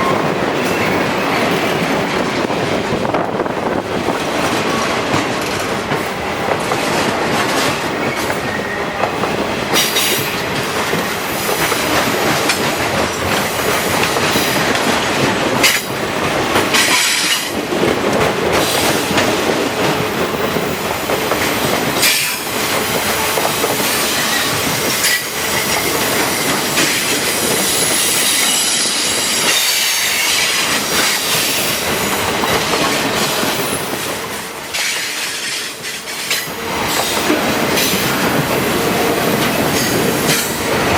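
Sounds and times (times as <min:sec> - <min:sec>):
freight train rolling past: 0:00.0 - 0:40.9
wheels clacking over rail joints: 0:00.0 - 0:40.9
high wheel squeal: 0:26.8 - 0:30.6.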